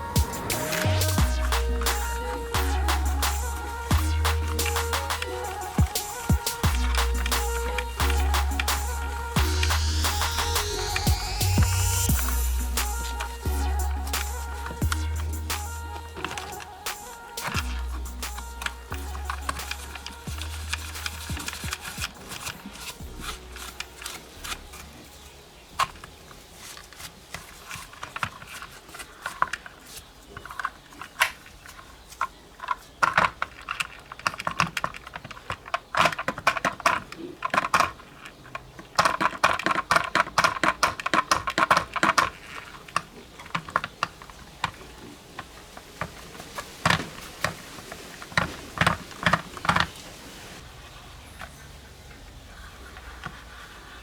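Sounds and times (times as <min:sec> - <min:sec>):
small tools clicking and tapping: 0:14.2 - 0:47.6.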